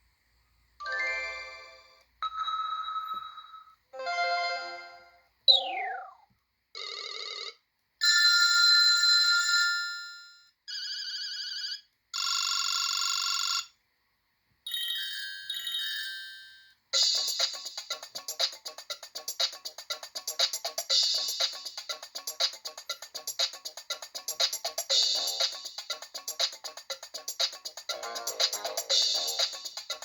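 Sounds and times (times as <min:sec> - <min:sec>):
rhythmic ringtone tune: 0:14.9 - 0:30.0.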